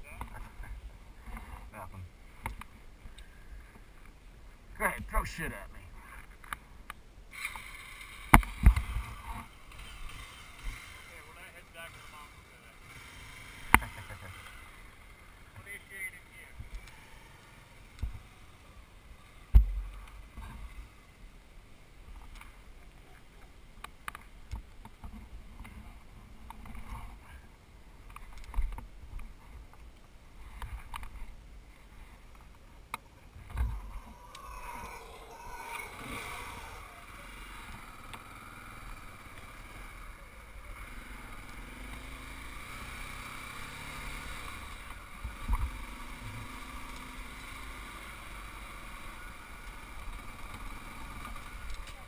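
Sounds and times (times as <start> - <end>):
motorcycle engine running: 36.0 - 52.0.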